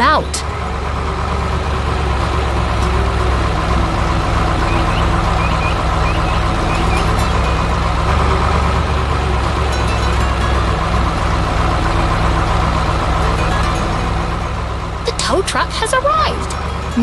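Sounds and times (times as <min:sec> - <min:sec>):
heavy vehicle engine rumbling: 0:00.0 - 0:17.0
high rising chirps: 0:04.6 - 0:07.4.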